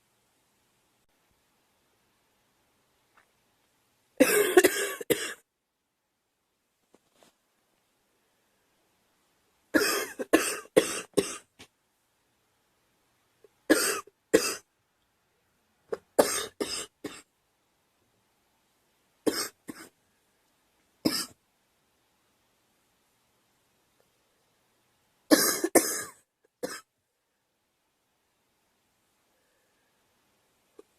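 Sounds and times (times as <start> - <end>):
girl coughing: 4.2 - 5.4, 9.8 - 11.4, 13.7 - 14.6, 16.2 - 17.2, 19.3 - 19.9, 21.1 - 21.3, 25.3 - 26.9.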